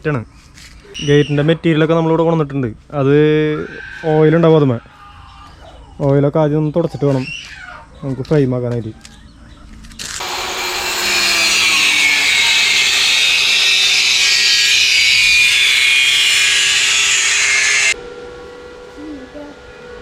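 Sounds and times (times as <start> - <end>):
power tool grinding steel: 10.2 - 18.0.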